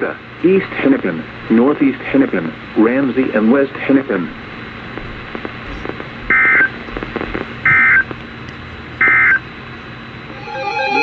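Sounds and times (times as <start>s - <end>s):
radio hiss: 0.0s - 8.0s.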